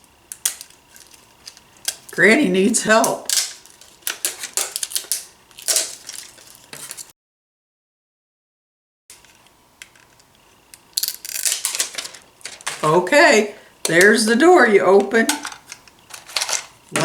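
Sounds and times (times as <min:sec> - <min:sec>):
plastic capsule clicking and crackling: 0:00.3 - 0:02.2, 0:03.0 - 0:06.6, 0:15.0 - 0:17.0.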